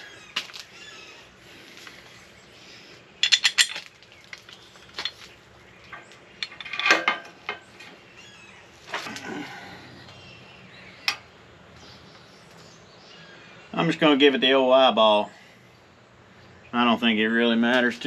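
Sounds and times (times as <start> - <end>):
metal tools clinking on steel: 3.2 - 8.0.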